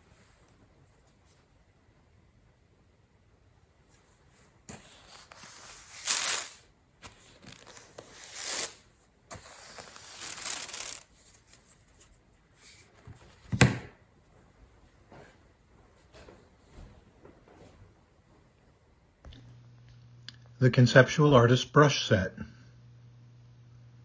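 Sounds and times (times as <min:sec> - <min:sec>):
paper rustling and tearing: 0:04.7 - 0:12.9.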